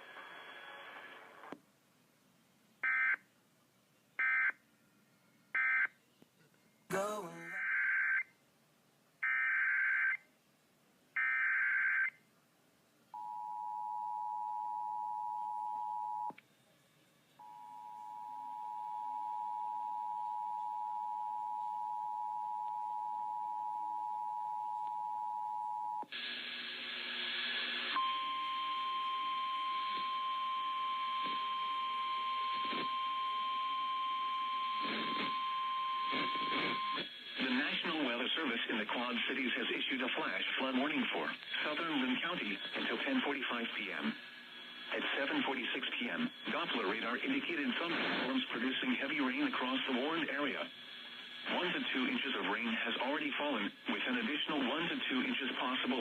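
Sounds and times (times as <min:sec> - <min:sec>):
hissy radio noise burst: 0:34.8 - 0:35.4, 0:36.1 - 0:56.0.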